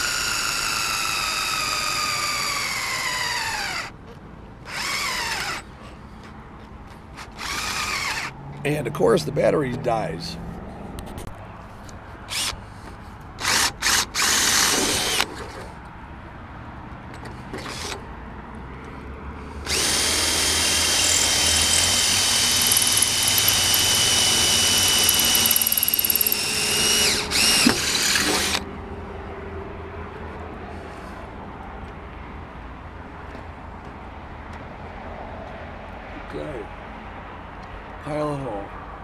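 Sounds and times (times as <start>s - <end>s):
cordless drill drilling metal: 0.0s - 3.9s, 4.7s - 5.7s, 7.2s - 8.3s, 12.3s - 12.6s, 13.4s - 15.3s, 17.6s - 18.0s, 19.6s - 28.6s.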